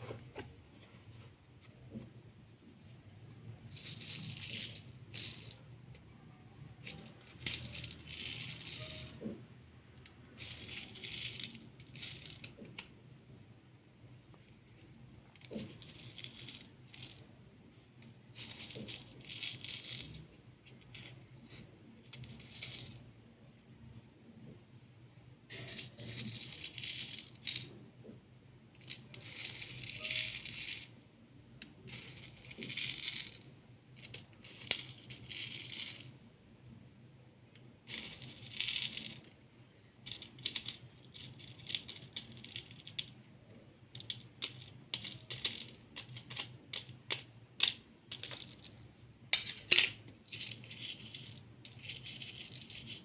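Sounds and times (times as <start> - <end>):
beads rattling: 3.5 - 5.7, 6.8 - 9.3, 10.3 - 12.7, 15.4 - 17.2, 18.3 - 20.2, 25.7 - 27.7, 28.8 - 30.9, 31.8 - 33.4, 34.0 - 36.1, 37.9 - 39.3, 40.0 - 43.2, 44.0 - 53.0.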